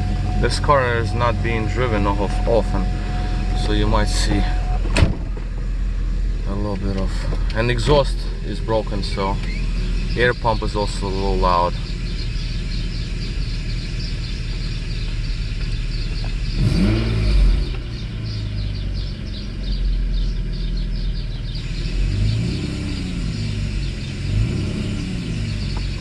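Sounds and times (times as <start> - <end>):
car engine idling and revving: 0.0 - 26.0.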